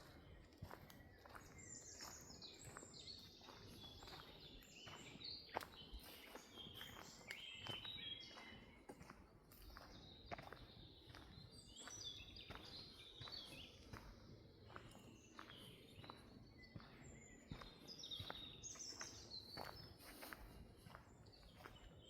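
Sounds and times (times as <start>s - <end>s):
footsteps on forest floor: 0.0s - 22.0s
birds chirping and trilling: 3.5s - 8.7s, 10.4s - 22.0s.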